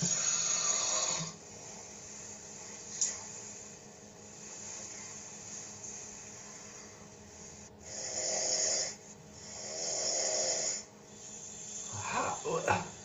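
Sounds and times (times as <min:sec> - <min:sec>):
man snoring: 0:00.0 - 0:01.4, 0:07.8 - 0:13.0
soft breathing: 0:00.0 - 0:13.0.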